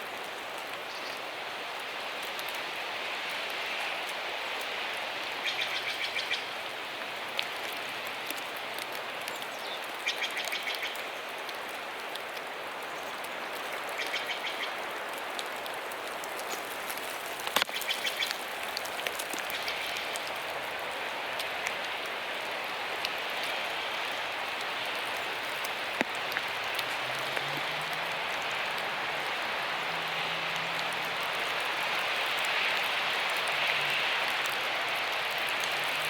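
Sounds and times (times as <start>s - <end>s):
steady rain-like hiss: 0.0s - 36.0s.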